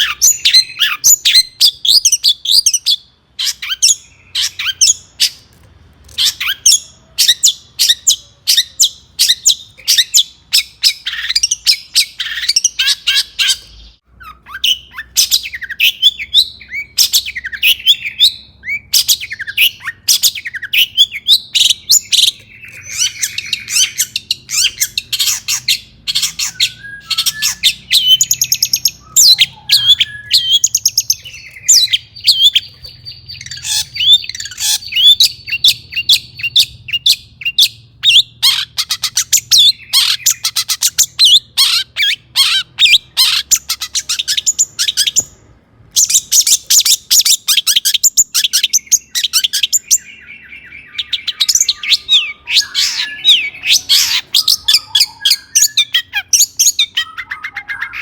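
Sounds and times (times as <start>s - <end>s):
shrike singing harsh chips: 6.2s - 58.0s.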